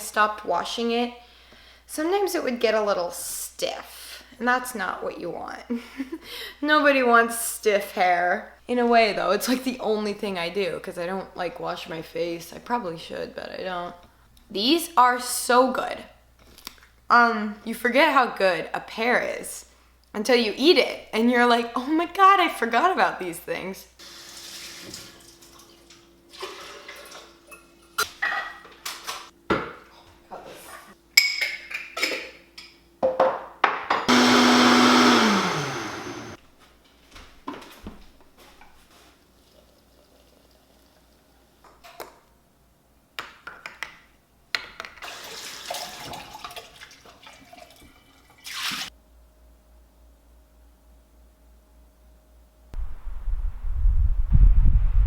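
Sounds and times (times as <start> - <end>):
electric blender running: 34.1 - 36.4.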